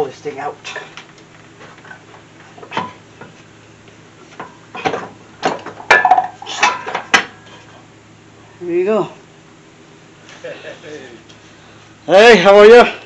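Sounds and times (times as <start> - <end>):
metal clunks and clanks: 2.6 - 3.4, 4.4 - 7.4.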